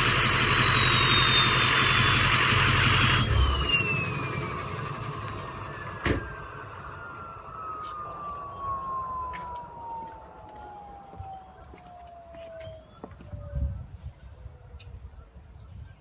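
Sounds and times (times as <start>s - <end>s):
turbocharger whistle spinning down: 0.0s - 11.6s
low engine rumble: 0.0s - 14.0s.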